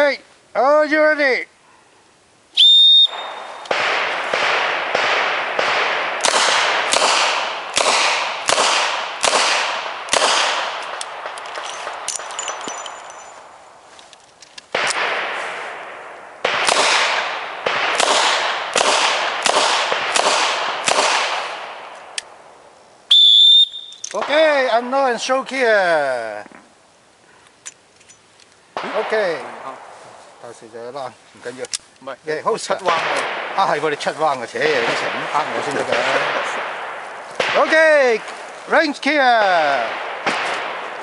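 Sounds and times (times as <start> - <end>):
whistle blast: 2.6 - 3.7, 23.1 - 24.1.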